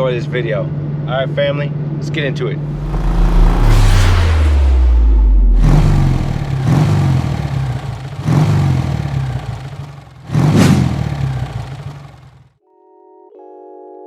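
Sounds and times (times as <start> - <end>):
vehicle engine revving: 2.6 - 12.3.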